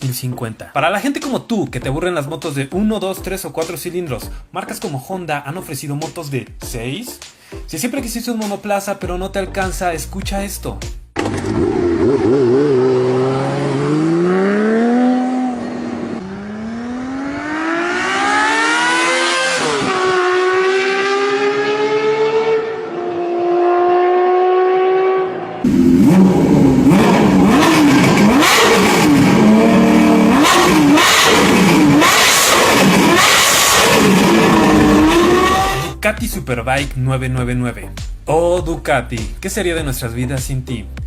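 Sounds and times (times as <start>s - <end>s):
motorcycle engine accelerating: 11.1s - 36.0s
quick throttle blips: 25.7s - 36.0s.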